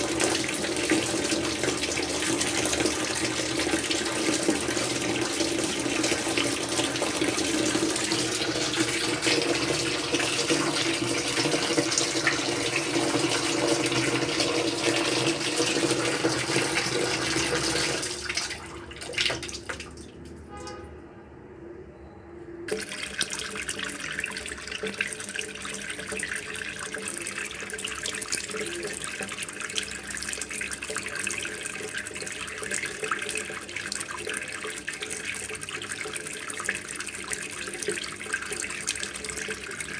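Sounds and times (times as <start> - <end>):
tap water splashing into container: 0.0 - 20.8, 22.7 - 39.9.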